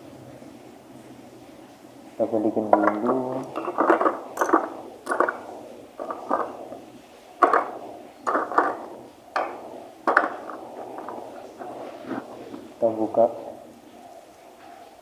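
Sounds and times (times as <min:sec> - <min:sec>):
camera case knocks and clicks: 0:02.8 - 0:11.8.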